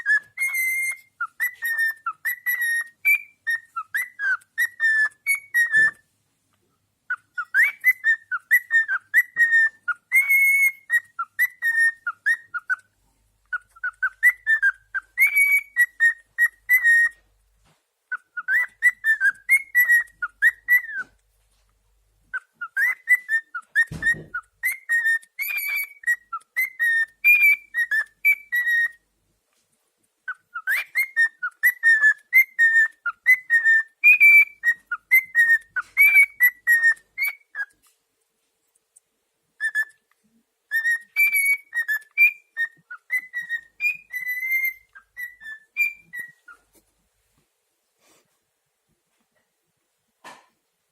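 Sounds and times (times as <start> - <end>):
cockatiel whistling: 0.0 - 6.0, 7.1 - 17.2, 18.1 - 21.2, 22.3 - 29.0, 30.2 - 37.9, 39.6 - 46.8
thump: 23.9 - 24.4, 50.2 - 50.5.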